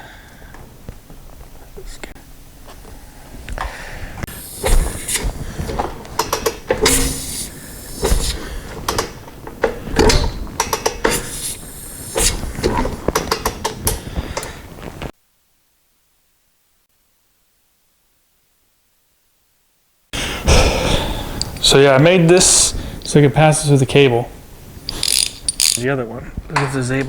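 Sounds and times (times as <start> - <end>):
sharp clicks and knocks: 4.2 - 11.6, 12.2 - 14.5.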